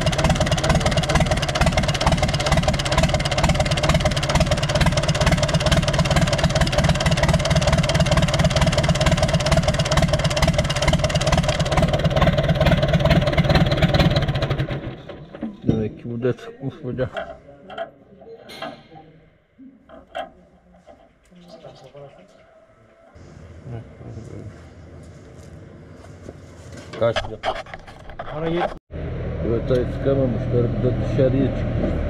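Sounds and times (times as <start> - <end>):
tractor diesel engine idling: 0.0 - 15.9.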